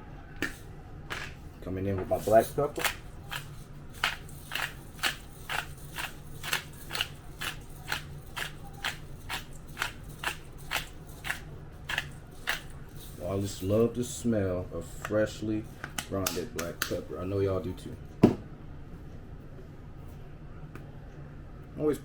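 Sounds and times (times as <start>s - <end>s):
pepper grinder grinding: 2.1s - 14.3s.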